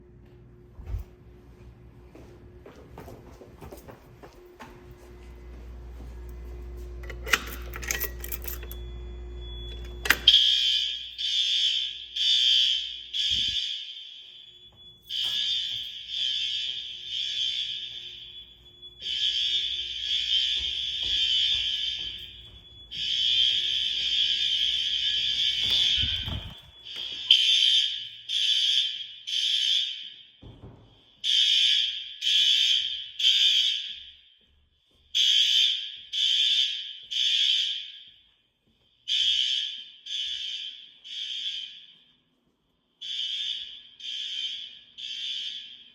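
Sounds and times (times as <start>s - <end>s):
fire alarm pulsing tone: 4.3s - 45.9s
low hum: 4.6s - 10.3s.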